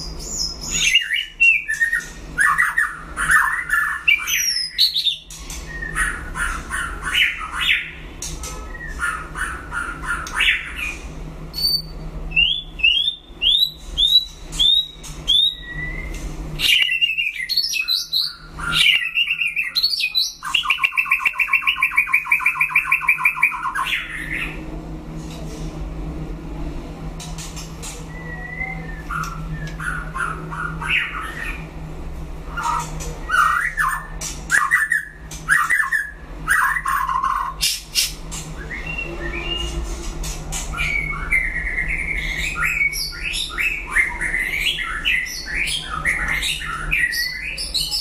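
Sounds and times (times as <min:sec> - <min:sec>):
bird singing whistled song: 0:00.0 - 0:06.2, 0:10.3 - 0:24.2, 0:28.1 - 0:30.1, 0:38.6 - 0:39.8, 0:40.8 - 0:48.0
fast bird trill: 0:11.6 - 0:24.6.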